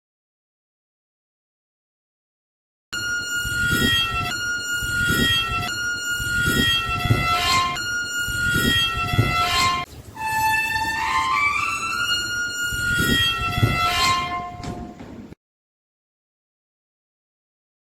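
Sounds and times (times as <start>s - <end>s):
iron door hinges squealing: 3.0s - 15.4s.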